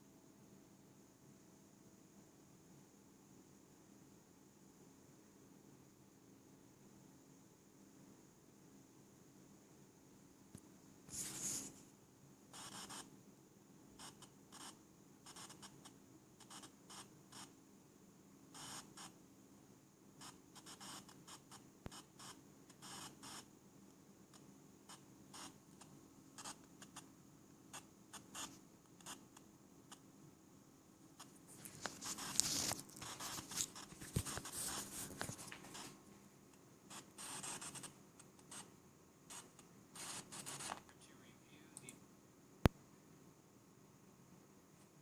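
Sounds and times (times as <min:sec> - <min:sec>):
headphone static crackle and hiss: 0:10.2 - 0:17.7, 0:18.4 - 0:42.9.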